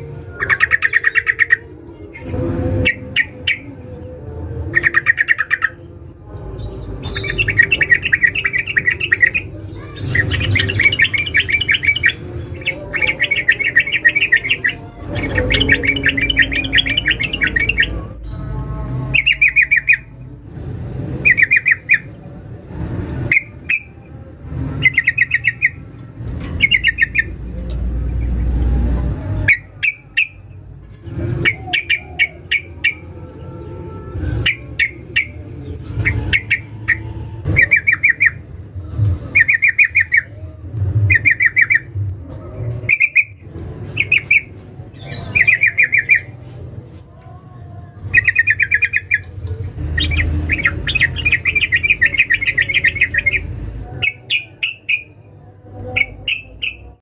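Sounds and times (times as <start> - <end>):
bird chattering: 50.0 - 55.2.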